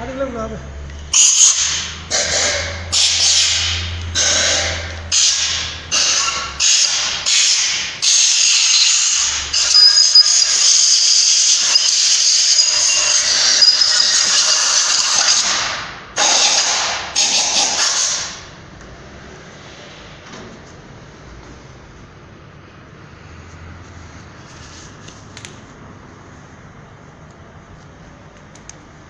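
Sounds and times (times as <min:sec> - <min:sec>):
thin high whistle: 0:09.6 - 0:14.6.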